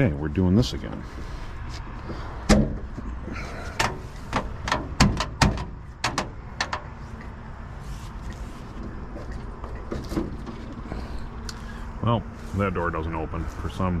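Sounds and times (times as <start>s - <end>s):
metal door latch clanking: 3.8s - 6.9s.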